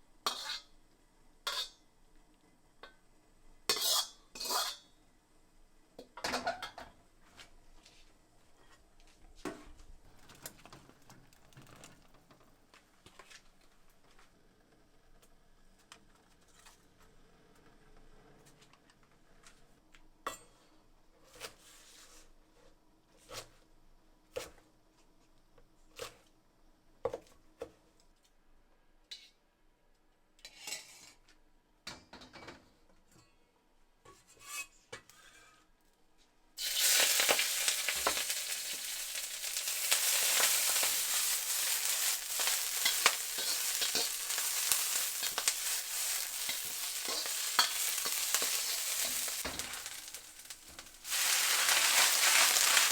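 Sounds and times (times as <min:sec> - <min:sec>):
food sizzling in hot oil: 0:36.6 - 0:52.9
kitchen utensils clicking: 0:36.6 - 0:52.9.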